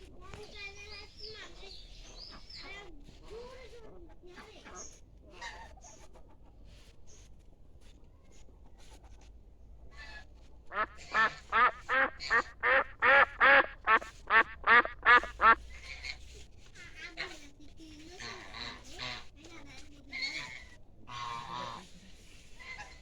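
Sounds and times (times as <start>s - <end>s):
duck quacking: 10.0s - 16.2s, 18.2s - 19.3s, 20.3s - 21.9s.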